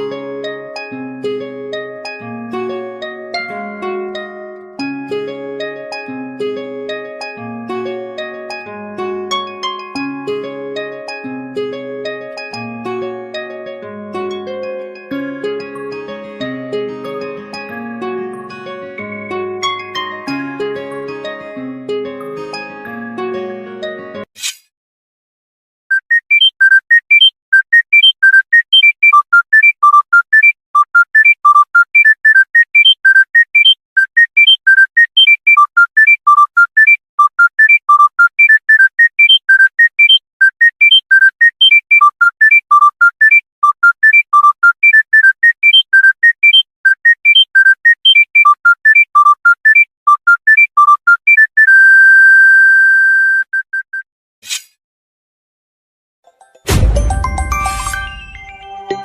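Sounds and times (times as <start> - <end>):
monophonic phone ringtone: 25.9 - 51.9.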